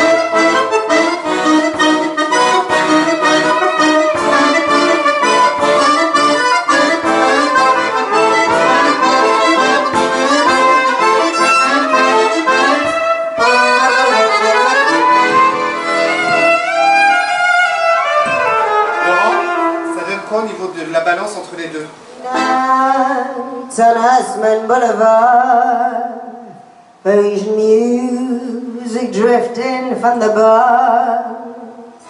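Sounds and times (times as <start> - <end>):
accordion playing lively tune: 0.0 - 20.8, 22.2 - 23.1.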